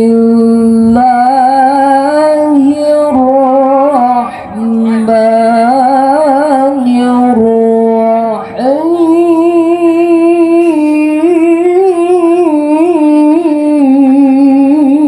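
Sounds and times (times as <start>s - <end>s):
person chanting melodically: 0.0s - 15.0s.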